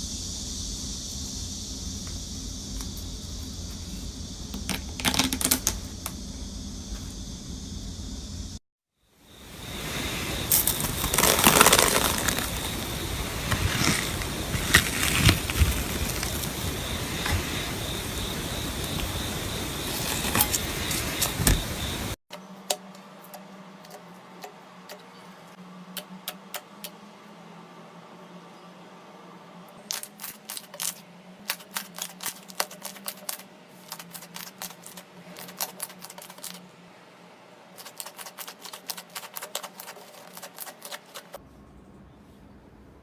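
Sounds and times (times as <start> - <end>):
slime squeezed and stretched: 10.5 - 12.8.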